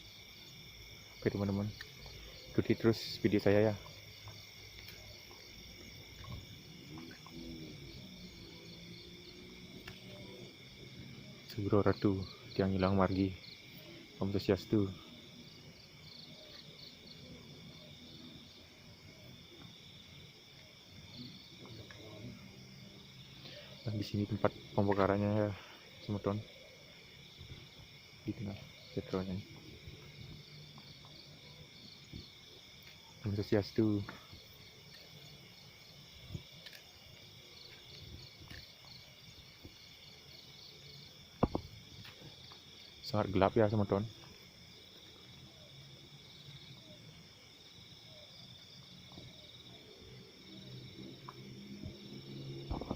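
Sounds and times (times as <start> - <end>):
crickets trilling: 0.0 - 52.9
night insects chirping: 0.0 - 52.9
soft knocks: 41.4 - 41.7.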